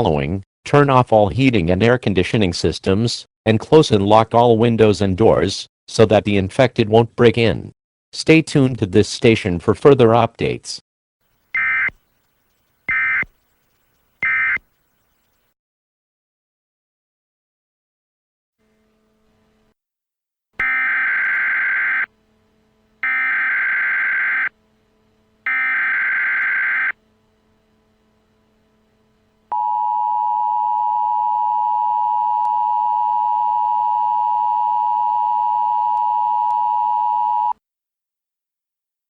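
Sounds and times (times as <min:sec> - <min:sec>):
two-tone attention signal: 0:23.0 - 0:24.5, 0:25.5 - 0:26.9.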